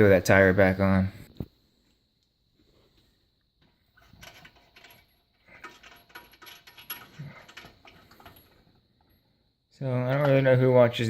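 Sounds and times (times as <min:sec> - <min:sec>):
metallic clinking and scraping: 0:03.6 - 0:09.3.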